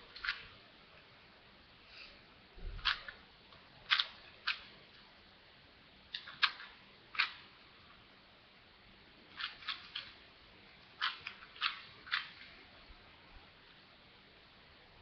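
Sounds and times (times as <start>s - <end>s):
puzzle cube clacking: 0.1s - 0.6s, 2.8s - 3.2s, 3.8s - 5.0s, 6.1s - 7.6s, 9.3s - 10.2s, 10.9s - 12.6s.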